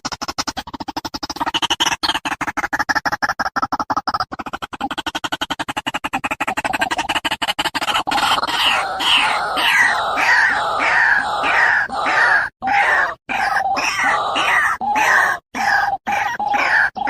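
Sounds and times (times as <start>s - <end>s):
harsh animal calls: 4.5s - 17.0s.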